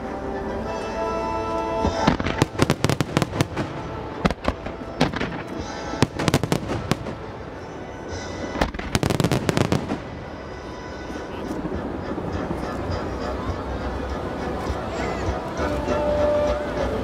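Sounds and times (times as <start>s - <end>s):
recorded music: 0.0s - 17.0s
fireworks banging: 1.8s - 13.3s.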